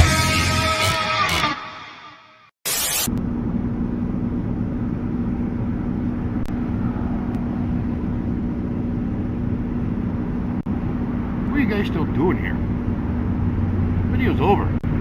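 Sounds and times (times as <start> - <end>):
machine humming and rushing: 5.4 - 11.5.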